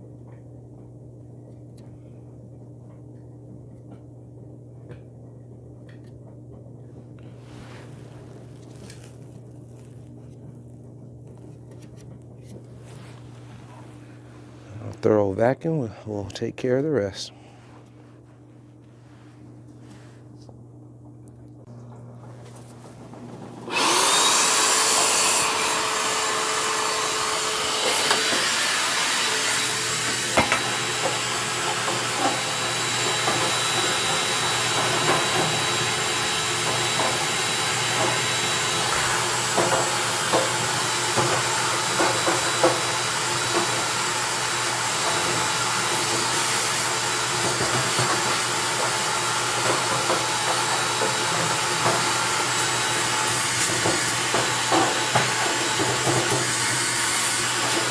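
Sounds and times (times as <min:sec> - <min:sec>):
vacuum cleaner whining: 0:21.7 - 0:57.9.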